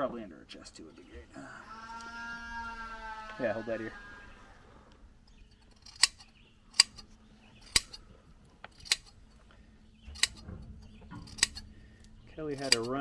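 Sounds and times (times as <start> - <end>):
shears snipping wool: 5.6 - 8.0, 8.6 - 9.2, 10.1 - 10.4, 11.3 - 11.6, 12.6 - 13.0.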